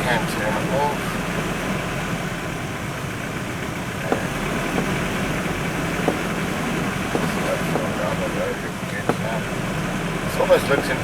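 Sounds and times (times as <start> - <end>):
engine and tyre rumble: 0.0 - 11.0
suspension knocks: 3.6 - 11.0.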